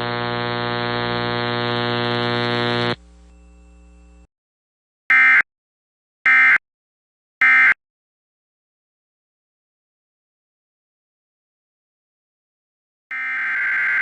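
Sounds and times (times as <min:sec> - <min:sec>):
loud buzzing hum: 0:00.0 - 0:04.2
faint hum: 0:00.0 - 0:04.3.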